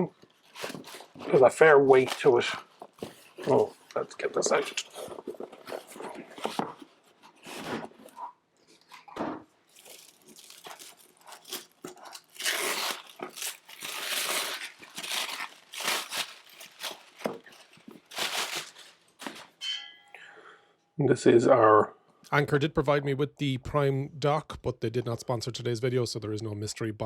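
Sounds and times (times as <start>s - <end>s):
cardboard and paper rustling: 0.0s - 19.6s.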